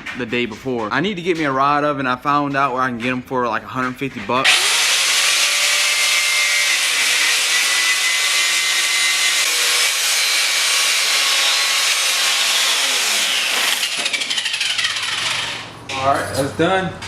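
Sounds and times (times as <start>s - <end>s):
power tool motor abrasive noise: 4.5s - 15.8s.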